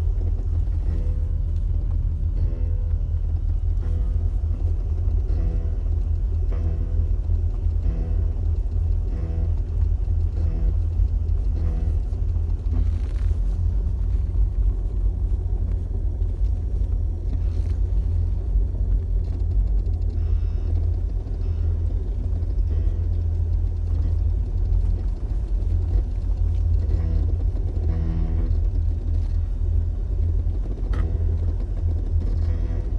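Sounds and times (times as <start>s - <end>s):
brake noise: 0.0s - 32.9s
car road rumble in cabin: 0.0s - 32.9s.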